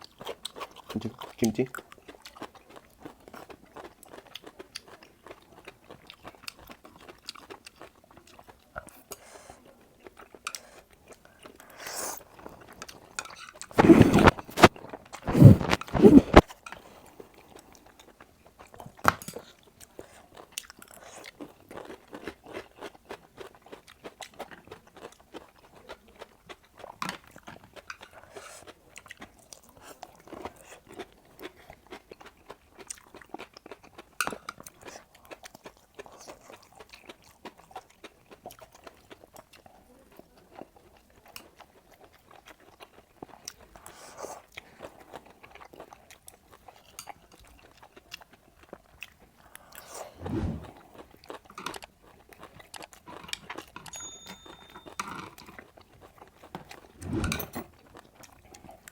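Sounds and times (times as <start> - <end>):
chewing and biting food: 0.0 - 58.9.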